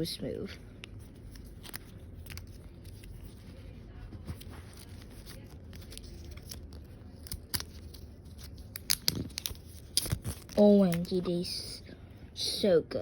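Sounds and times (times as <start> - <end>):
packaging rustling: 0.9 - 11.4.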